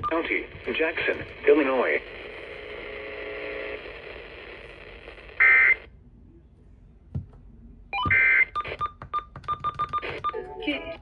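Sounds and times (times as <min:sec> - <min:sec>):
radio hiss: 0:00.1 - 0:05.9.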